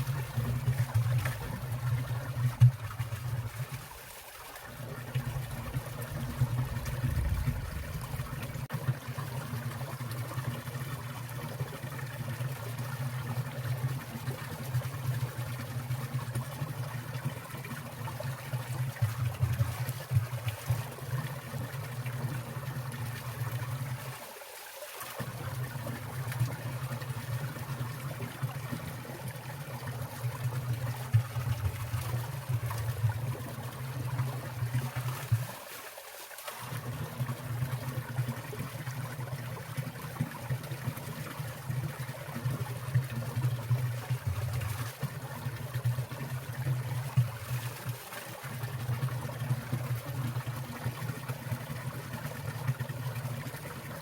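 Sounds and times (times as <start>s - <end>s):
stream trickling and splashing: 0.0s - 54.0s
low rumble: 6.7s - 8.4s.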